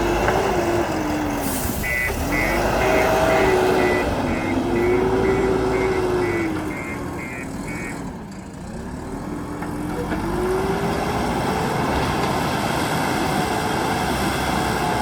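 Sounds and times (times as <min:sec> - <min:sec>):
diesel engine revving: 0:00.0 - 0:15.0
short high beeps: 0:01.8 - 0:08.0.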